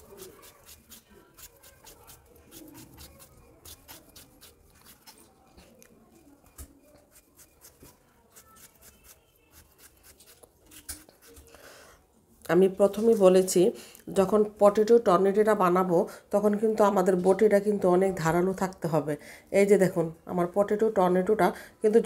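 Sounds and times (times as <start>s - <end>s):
blade cutting raw potato: 0.0s - 11.5s.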